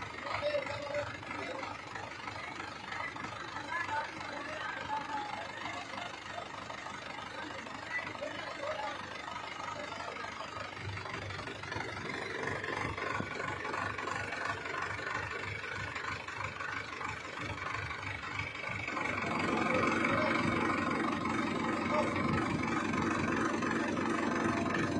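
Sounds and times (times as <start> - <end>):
diesel engine running: 0.0 - 24.9.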